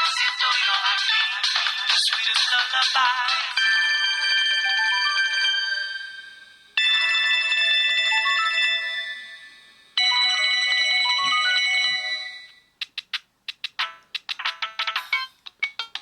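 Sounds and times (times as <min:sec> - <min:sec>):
chiming synthesized ringtone melody: 0:03.2 - 0:12.6, 0:13.8 - 0:16.0.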